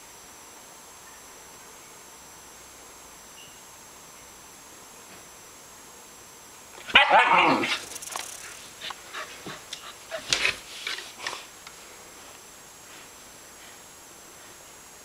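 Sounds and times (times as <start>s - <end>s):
husky vocalising: 8.8s - 10.4s.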